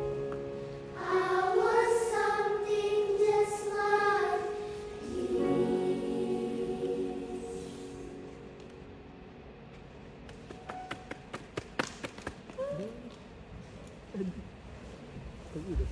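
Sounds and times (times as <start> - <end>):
choir singing sustained chords: 0.0 - 10.2.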